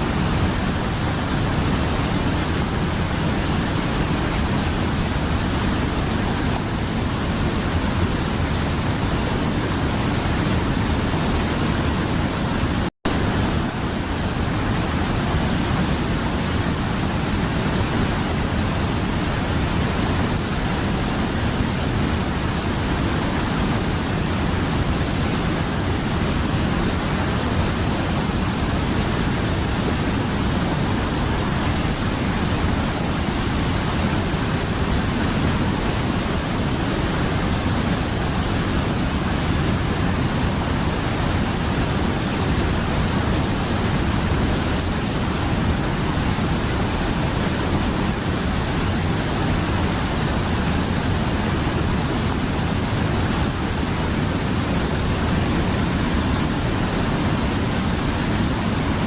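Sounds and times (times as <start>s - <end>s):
river flowing: 0.0s - 59.0s.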